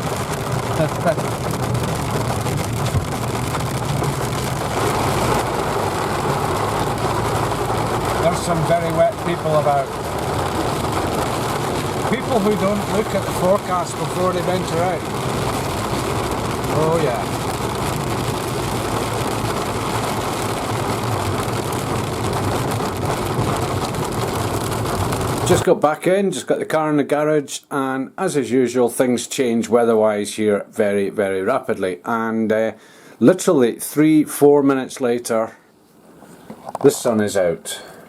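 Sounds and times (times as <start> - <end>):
car engine running: 0.0 - 25.6
wet road noise: 0.0 - 25.7, 36.0 - 38.0
rain on car roof: 0.0 - 26.0, 36.1 - 38.0.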